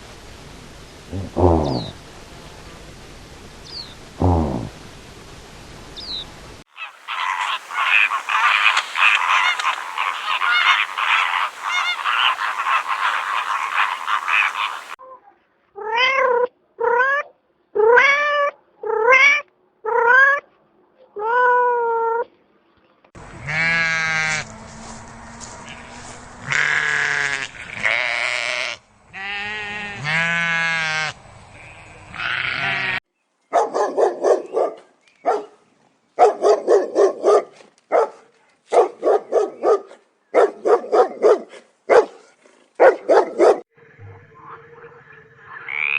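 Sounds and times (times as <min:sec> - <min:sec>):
dense noisy animal chatter: 0:06.7 - 0:15.0, 0:23.2 - 0:33.0, 0:43.8 - 0:45.9
long wavering animal calls: 0:06.7 - 0:15.0, 0:23.2 - 0:33.0, 0:43.7 - 0:45.9
dog barks: 0:06.8 - 0:15.0, 0:33.5 - 0:35.6, 0:36.2 - 0:43.6.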